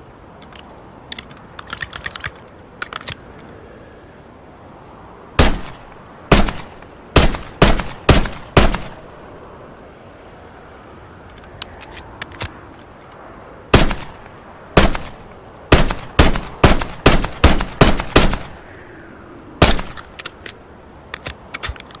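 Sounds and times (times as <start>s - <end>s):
faint metallic clicks: 0.3s - 3.6s, 11.2s - 13.2s, 18.6s - 22.0s
pistol shots: 5.4s - 9.0s, 13.7s - 14.2s, 14.8s - 18.6s, 19.6s - 20.0s.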